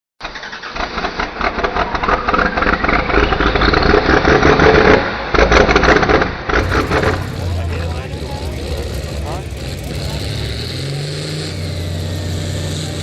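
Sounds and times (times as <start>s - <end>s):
tractor engine running under load: 6.6s - 13.0s.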